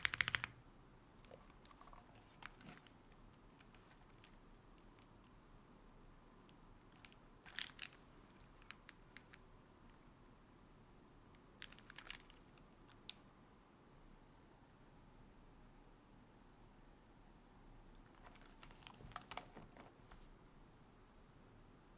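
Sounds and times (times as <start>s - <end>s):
mechanical keyboard key clicks: 0.0s - 0.6s.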